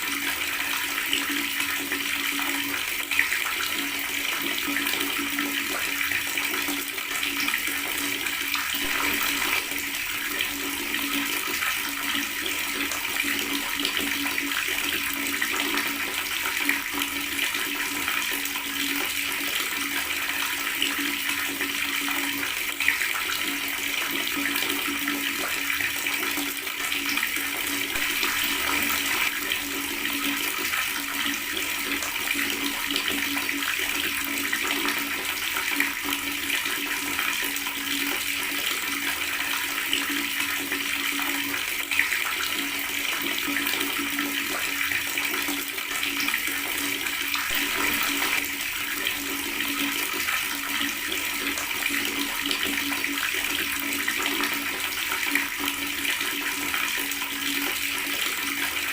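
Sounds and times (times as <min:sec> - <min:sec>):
water running from a tap: 0:00.0 - 0:58.9.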